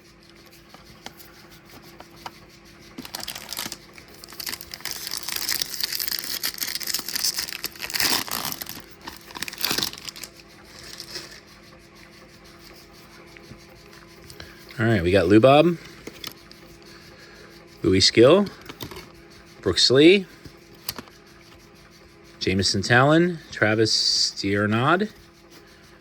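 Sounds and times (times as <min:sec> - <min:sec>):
foil wrapper crinkling and tearing: 0:03.0 - 0:11.4.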